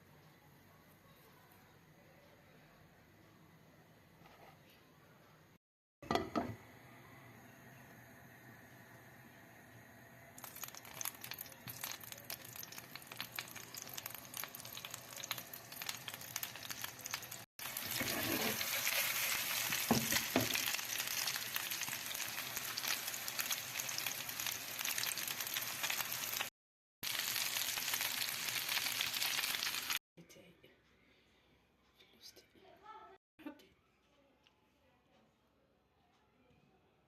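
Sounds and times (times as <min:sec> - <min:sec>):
food sizzling in hot oil: 0:08.3 - 0:30.0.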